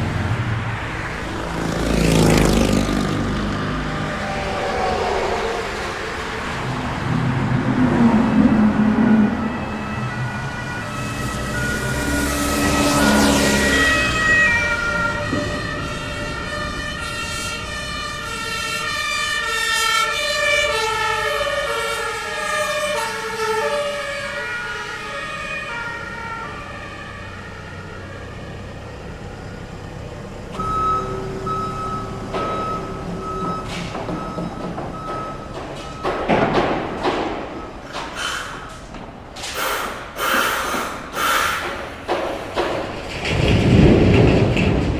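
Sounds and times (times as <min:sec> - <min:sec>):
street traffic: 0:00.0 - 0:44.9
two-tone siren: 0:01.3 - 0:38.7
short beeps: 0:30.6 - 0:36.2.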